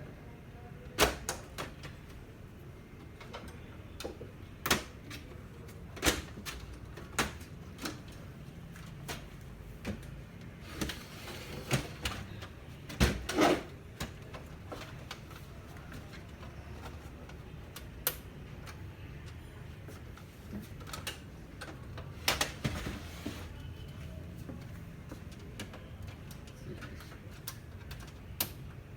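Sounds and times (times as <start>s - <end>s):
clicks and knocks of plastic parts: 3.0s - 11.0s, 11.7s - 22.8s.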